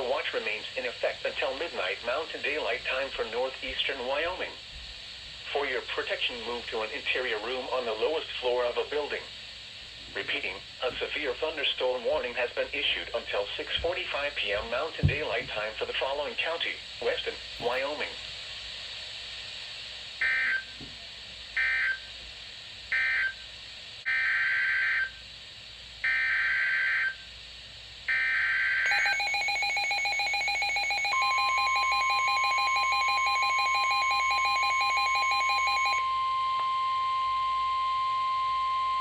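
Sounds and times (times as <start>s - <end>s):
steady high warning tone: 20.2s - 20.8s, 22.9s - 25.3s, 26.0s - 27.3s, 28.1s - 39.0s
fast-pulsing electronic beep: 28.9s - 36.0s.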